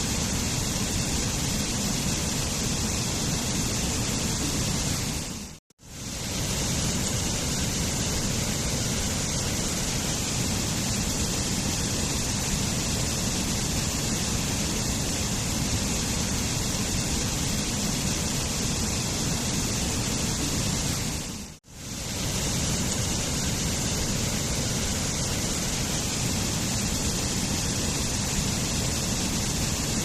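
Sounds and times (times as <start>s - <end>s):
waterfall rushing: 21.9s - 30.0s.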